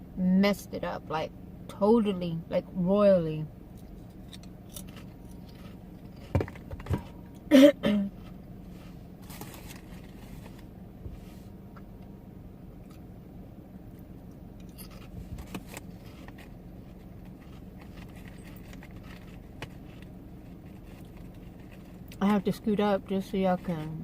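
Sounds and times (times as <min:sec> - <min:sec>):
car cabin hum: 0:00.0 - 0:24.0
faint clicks and rustles: 0:14.6 - 0:22.5.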